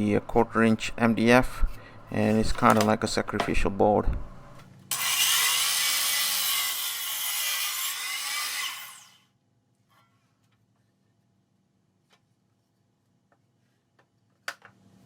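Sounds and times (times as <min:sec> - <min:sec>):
power saw cutting wood: 0:04.9 - 0:09.2.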